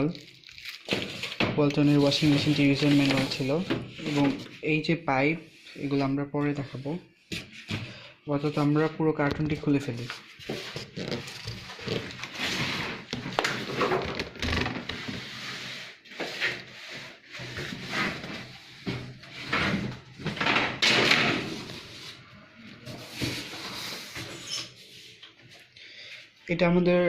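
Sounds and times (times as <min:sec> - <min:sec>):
cardboard scraping and rustling: 0:00.9 - 0:04.6, 0:09.4 - 0:25.2.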